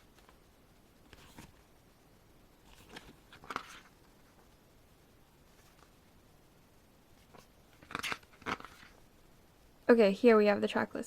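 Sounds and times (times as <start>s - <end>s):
pages turning: 1.0s - 1.6s, 2.6s - 4.0s, 5.5s - 5.9s, 7.2s - 9.0s.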